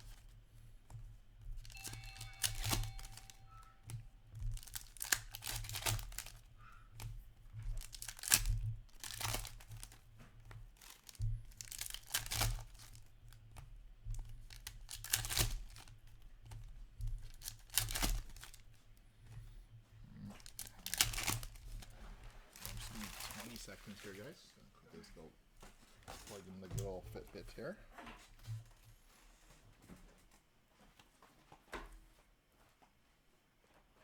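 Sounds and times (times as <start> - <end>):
wrapper tearing and crinkling: 1.6 - 13.4, 14.4 - 16.0, 17.0 - 18.8, 20.3 - 24.4.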